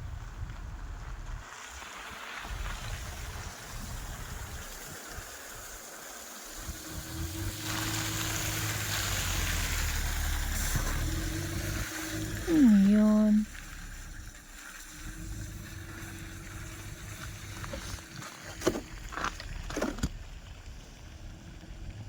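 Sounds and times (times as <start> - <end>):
steady hiss: 1.4 - 19.1
car engine running: 6.4 - 22.0.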